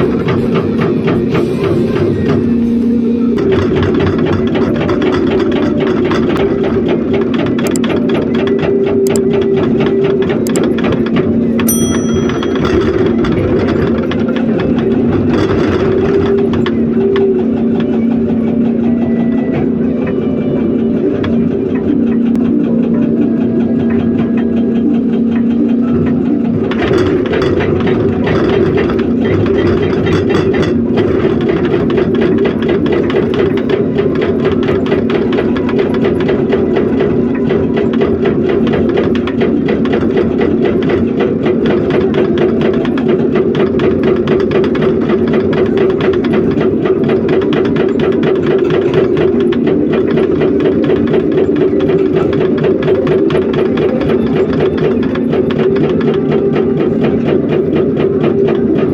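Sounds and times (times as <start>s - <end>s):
excavator diesel engine running: 0.0s - 58.9s.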